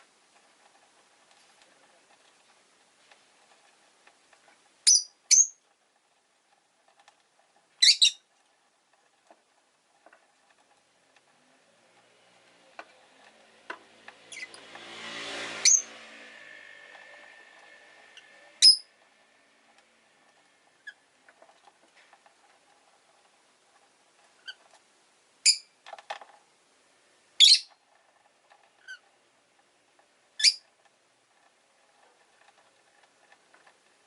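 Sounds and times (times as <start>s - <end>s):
lovebird chirping: 4.8s - 5.6s, 7.8s - 8.2s, 15.6s - 15.9s, 18.6s - 18.9s, 25.4s - 25.7s, 27.4s - 27.8s, 30.4s - 30.6s
passing street traffic: 12.0s - 20.2s.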